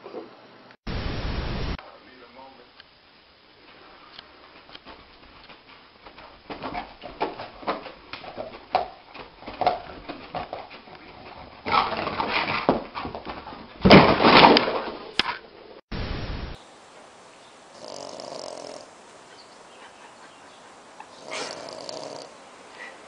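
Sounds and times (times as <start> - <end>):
dog whimpering: 19.3 - 23.0.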